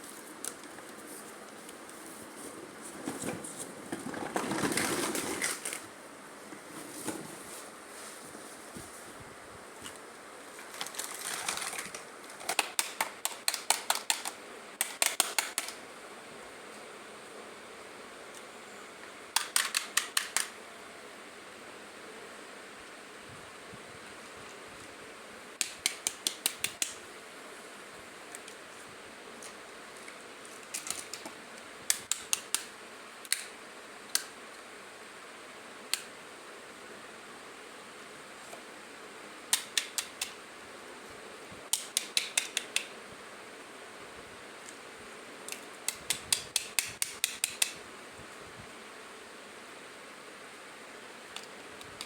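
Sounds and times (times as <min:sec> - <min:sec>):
plastic rustle: 0:00.0 - 0:09.2, 0:09.8 - 0:12.7
faint steady hiss: 0:00.0 - 0:52.0
plastic toy pieces clicking: 0:10.8 - 0:15.8, 0:19.4 - 0:20.5, 0:30.7 - 0:31.2, 0:41.8 - 0:42.9.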